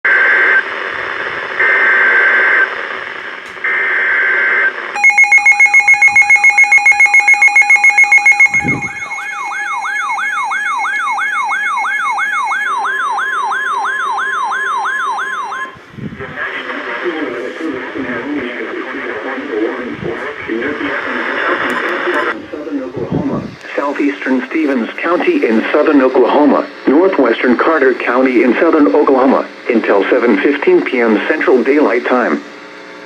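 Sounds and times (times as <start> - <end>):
buzzy data tones: 5.0 - 15.8
rapidly pulsing alert beeps: 5.0 - 15.8
steady alert tone: 5.0 - 15.8
warbling siren-like tone: 5.0 - 15.8.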